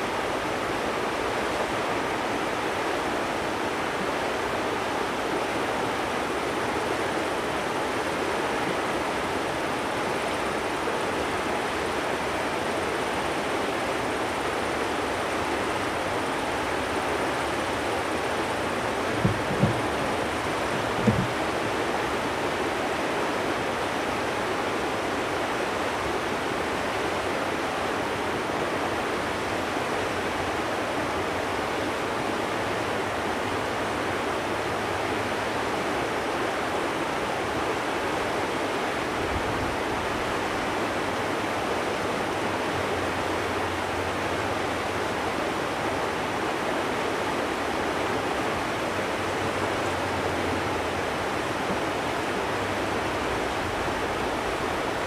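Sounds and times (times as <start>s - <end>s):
river water rushing: 0.0s - 55.0s
short knocks: 19.0s - 21.6s.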